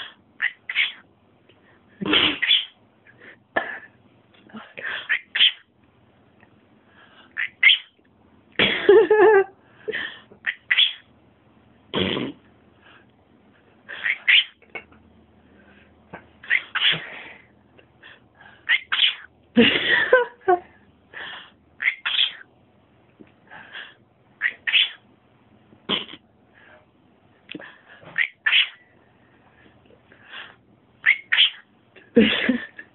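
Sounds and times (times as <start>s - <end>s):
cockatiel chattering: 0.0s - 1.0s, 2.1s - 2.8s, 5.0s - 5.6s, 7.4s - 7.9s, 10.4s - 11.1s, 13.9s - 14.8s, 16.4s - 17.0s, 18.7s - 19.3s, 21.8s - 22.5s, 24.4s - 25.0s, 28.2s - 28.8s, 31.0s - 31.7s
cockatiel sneezing: 2.0s - 2.7s, 16.4s - 17.2s.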